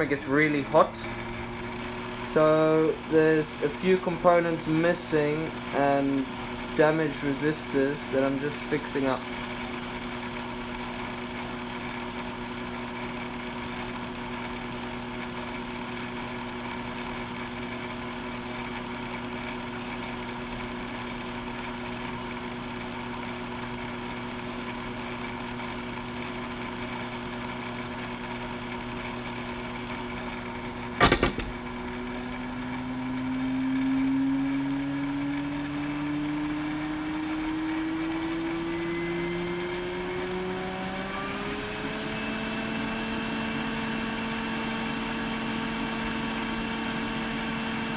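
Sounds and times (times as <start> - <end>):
electric blower motor humming: 0.0 - 21.8, 24.8 - 47.9
sharp click: 30.7 - 31.7.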